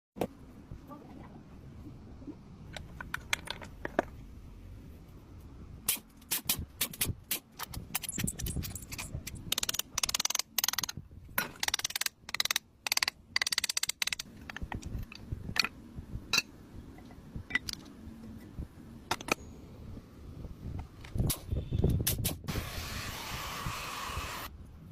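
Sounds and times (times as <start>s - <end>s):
metal tools clinking and knocking: 7.6s - 15.7s.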